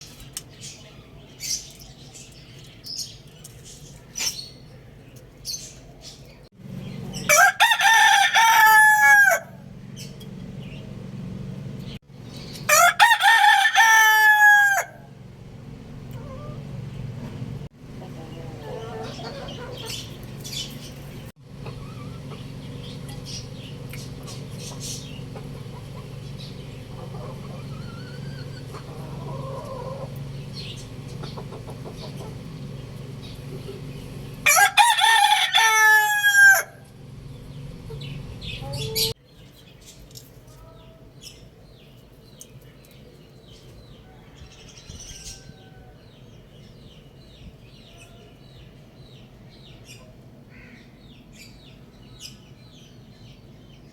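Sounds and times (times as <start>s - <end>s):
rooster crowing: 7.2s - 9.6s, 12.7s - 15.1s, 34.4s - 37.0s, 44.0s - 46.2s
steady low hum: 9.4s - 12.7s, 14.9s - 34.8s, 36.6s - 39.2s
chickens clucking: 16.0s - 39.2s.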